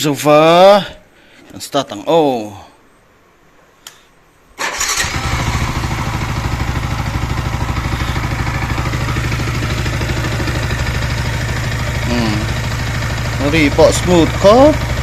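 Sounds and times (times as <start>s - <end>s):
motorcycle engine idling: 4.7s - 15.0s.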